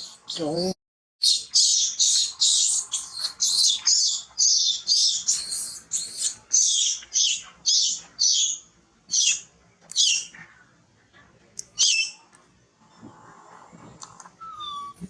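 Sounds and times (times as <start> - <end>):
monkey shrill distress calls: 0.0 - 9.4, 11.8 - 12.2.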